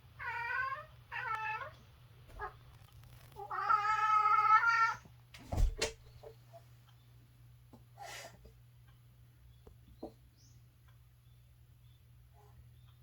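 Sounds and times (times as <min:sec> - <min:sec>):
cat meowing: 0:00.2 - 0:02.6, 0:03.4 - 0:05.0.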